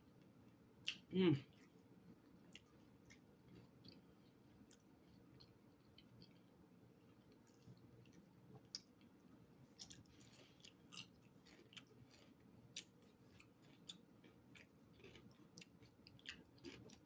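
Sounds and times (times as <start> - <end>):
close-up chewing: 0.8 - 17.0
food crunches: 9.8 - 17.0.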